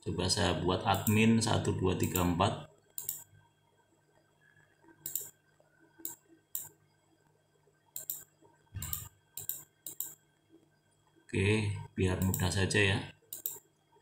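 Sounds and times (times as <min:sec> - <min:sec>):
computer mouse clicking: 0:00.9 - 0:01.2, 0:02.0 - 0:03.3, 0:04.8 - 0:05.4, 0:06.0 - 0:06.8, 0:07.9 - 0:10.2, 0:12.2 - 0:12.6, 0:13.3 - 0:13.7.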